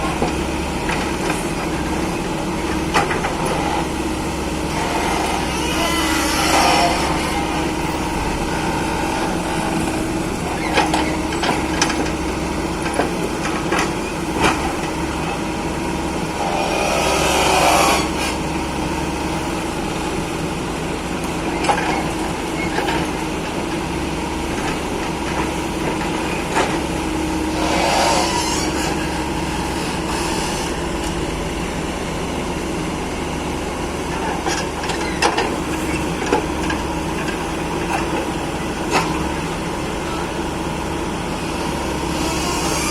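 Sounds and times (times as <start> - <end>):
excavator diesel engine running: 0.0 - 42.9
rushing noise: 28.5 - 34.4.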